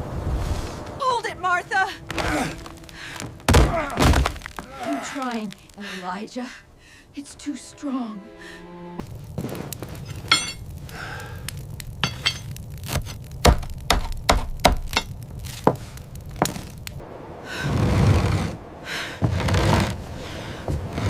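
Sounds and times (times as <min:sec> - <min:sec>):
sharp knocks and thuds: 0:02.1 - 0:04.7, 0:12.9 - 0:15.8
rushing noise: 0:17.0 - 0:21.0.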